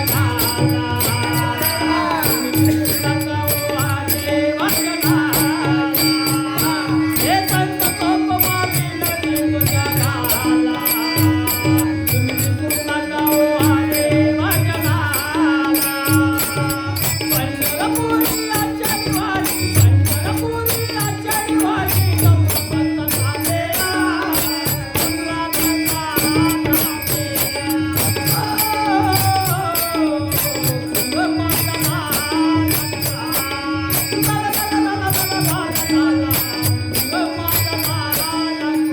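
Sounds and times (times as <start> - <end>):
devotional song melody: 0.0 - 38.9
jingling cymbals: 0.0 - 38.9.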